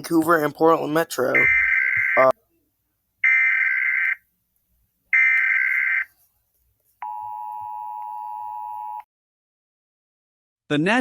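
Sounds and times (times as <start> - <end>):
steady alarm tone: 1.3 - 2.3, 3.2 - 4.2, 5.2 - 6.1
warbling data tones: 1.4 - 2.3.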